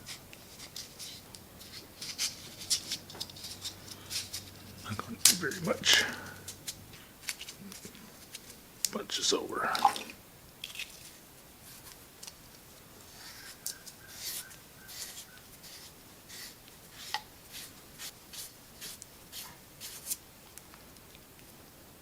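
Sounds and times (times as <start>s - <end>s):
sandpaper scraping metal: 0.0s - 7.5s, 13.1s - 20.2s.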